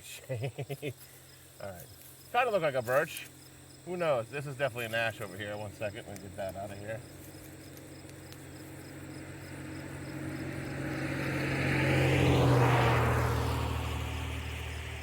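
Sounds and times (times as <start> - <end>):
vehicle passing by: 6.6 - 15.0.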